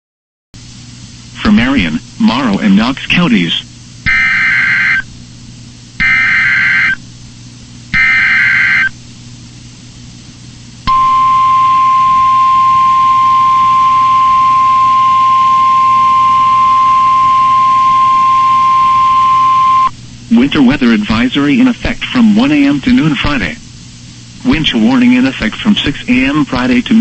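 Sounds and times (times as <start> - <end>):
faint radio hiss: 0.6 - 27.0
buzzy digital bursts: 4.1 - 5.0, 6.0 - 7.0, 8.0 - 8.9
steady high alarm beep: 4.1 - 5.0, 6.0 - 7.0, 8.0 - 8.9, 10.9 - 19.9.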